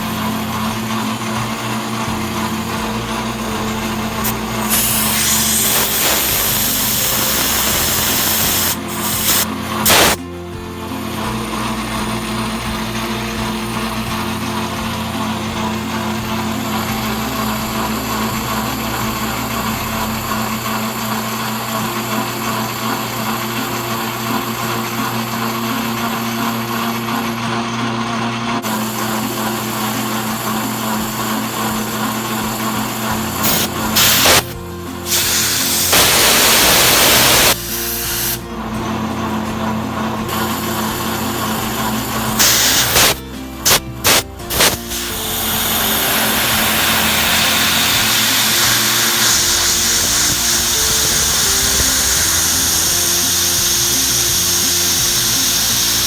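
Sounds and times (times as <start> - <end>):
loud hiss: 0.0 - 10.3, 28.6 - 38.5, 40.2 - 56.0
background music: 0.0 - 56.0
metal lathe humming: 0.0 - 56.0.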